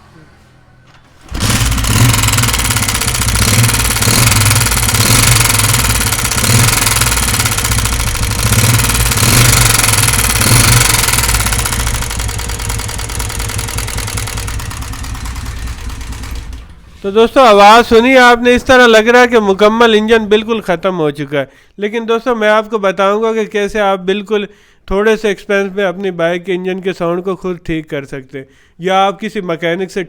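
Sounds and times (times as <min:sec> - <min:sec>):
engine running with clattering tick: 0:01.2 - 0:17.0.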